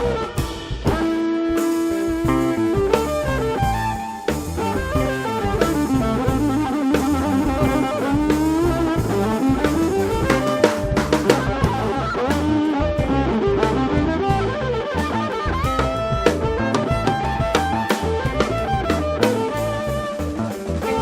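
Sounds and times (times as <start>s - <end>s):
bass guitar: 0.0s - 21.0s
drum kit groove: 0.0s - 21.0s
sliding lead melody: 0.0s - 21.0s.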